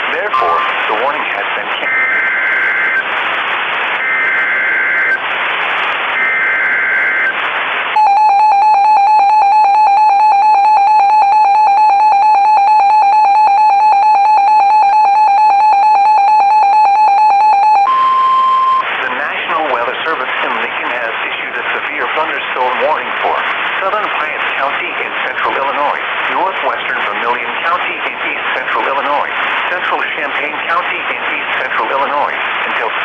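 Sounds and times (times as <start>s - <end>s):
buzzy attention tone: 0.3s - 1.1s.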